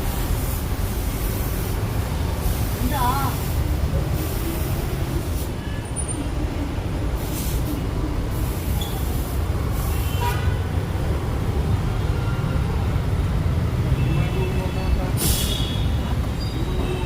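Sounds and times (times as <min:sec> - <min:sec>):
short hissing bursts: 0:00.0 - 0:05.6, 0:07.2 - 0:10.3, 0:15.2 - 0:15.8.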